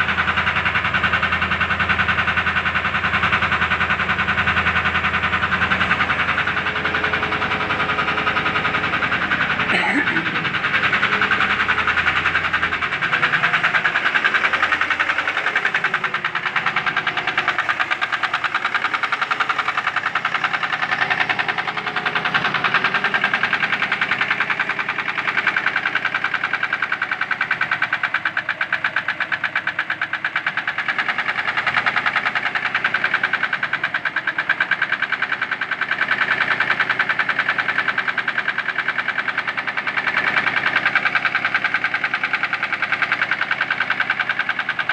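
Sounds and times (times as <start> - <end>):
car engine running: 0.0 - 44.9
fast knocking inside engine: 0.0 - 44.9.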